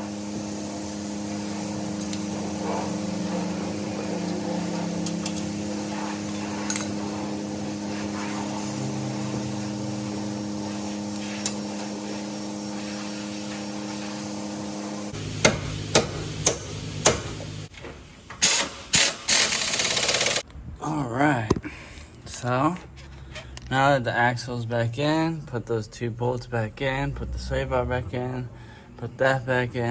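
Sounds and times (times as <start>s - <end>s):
mechanical hum with held tones: 0.0s - 18.4s
sharp knocks on metal: 15.4s - 17.4s.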